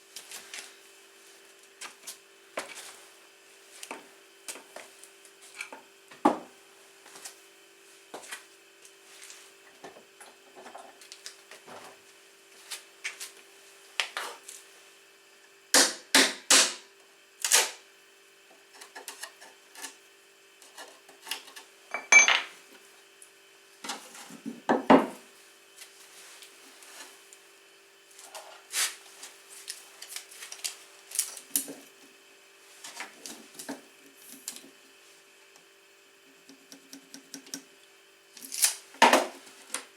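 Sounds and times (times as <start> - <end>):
metal clank with ring: 21.9 - 22.4
tools clattering on a workbench: 21.9 - 22.6.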